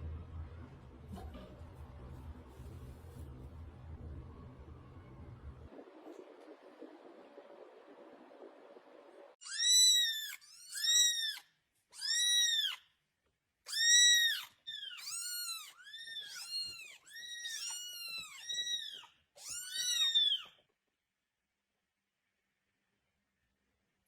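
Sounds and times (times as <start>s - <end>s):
animal high-pitched crying calls: 9.4s - 12.8s, 13.7s - 20.6s.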